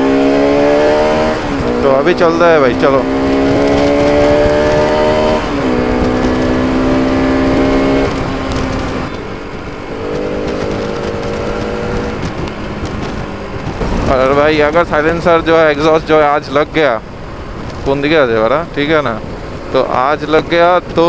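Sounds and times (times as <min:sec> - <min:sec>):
motorcycle engine revving: 0:00.0 - 0:21.0
wind on microphone: 0:00.0 - 0:21.0.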